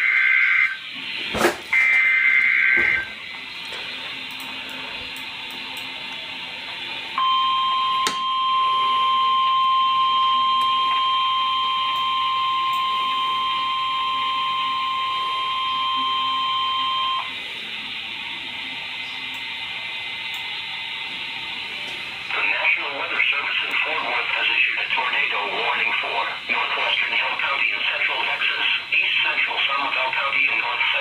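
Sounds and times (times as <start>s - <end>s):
high steady alarm beep: 7.2s - 17.3s
radio hiss: 15.2s - 31.0s.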